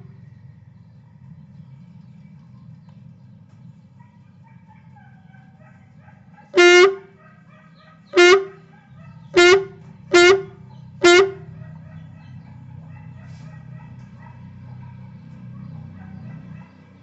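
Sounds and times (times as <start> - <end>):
toy gun buzzy honks: 6.6 - 7.1, 8.2 - 8.6, 9.4 - 11.5.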